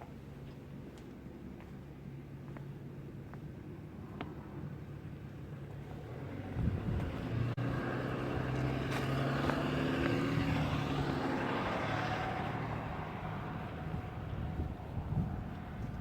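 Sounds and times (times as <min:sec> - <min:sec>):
motor vehicle passing by: 0:05.7 - 0:16.0.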